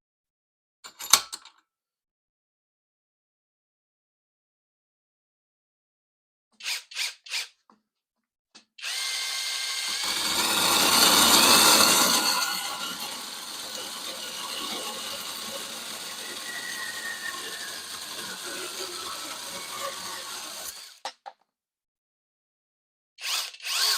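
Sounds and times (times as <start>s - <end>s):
cordless screwdriver whirring: 8.8s - 21.0s, 23.2s - 23.9s.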